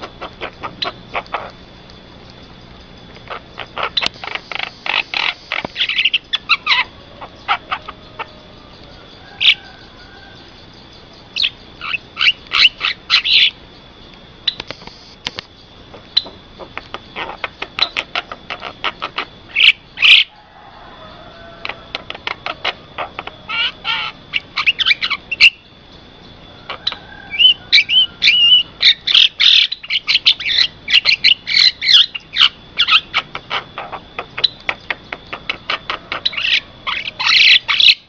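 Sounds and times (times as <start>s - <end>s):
birds chattering and calling: 0.0s - 38.0s.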